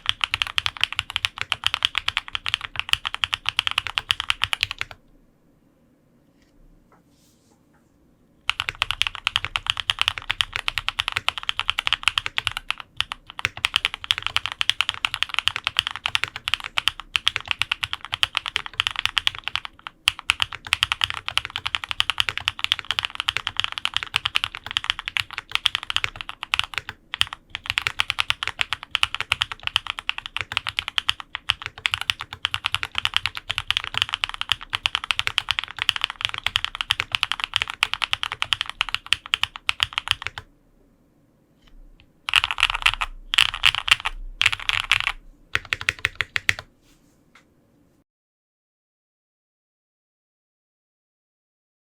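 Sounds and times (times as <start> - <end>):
fast mechanical keyboard typing: 0.0 - 5.0, 8.5 - 40.5, 42.2 - 46.7.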